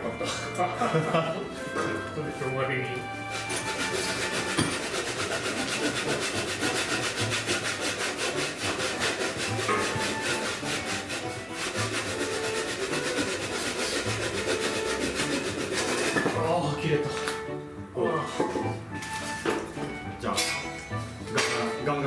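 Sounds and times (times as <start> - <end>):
hand saw cutting wood: 3.2 - 17.5.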